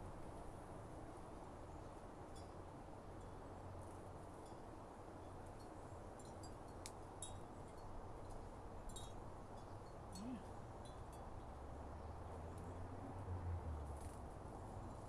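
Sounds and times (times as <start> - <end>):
wind chimes tinkling: 7.2 - 11.4.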